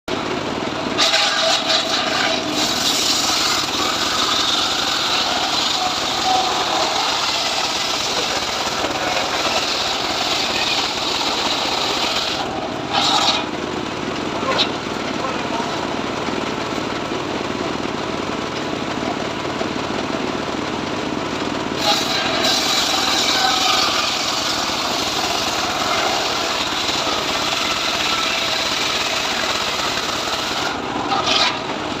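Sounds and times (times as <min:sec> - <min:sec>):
sawmill saw cutting wood: 0:00.7 - 0:16.6, 0:21.7 - 0:32.0.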